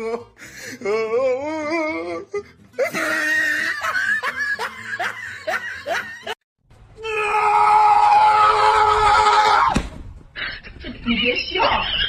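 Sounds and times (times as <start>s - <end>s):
loud steady scream: 7.0s - 9.8s.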